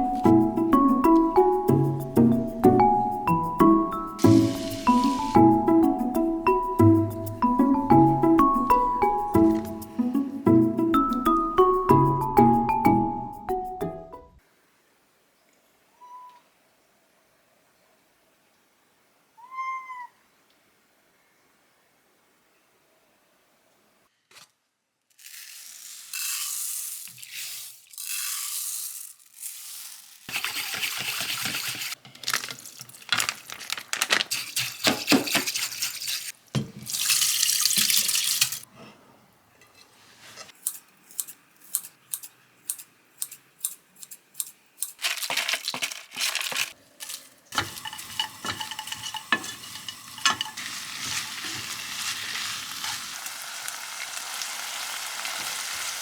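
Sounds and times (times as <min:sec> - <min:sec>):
water running from a tap: 0:04.2 - 0:05.3, 0:35.4 - 0:38.7, 0:47.6 - 0:56.0
food sizzling in a pan: 0:04.2 - 0:05.5, 0:47.0 - 0:56.0.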